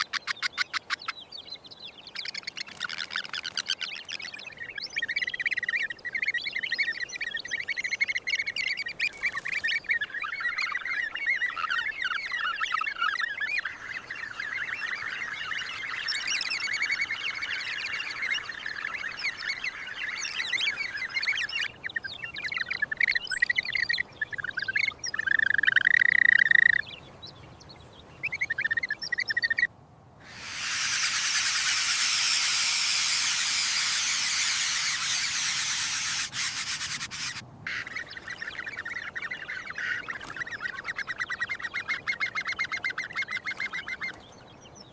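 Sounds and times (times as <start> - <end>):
many birds calling: 2.0 - 27.0, 28.3 - 44.9
bird held call: 30.2 - 38.0.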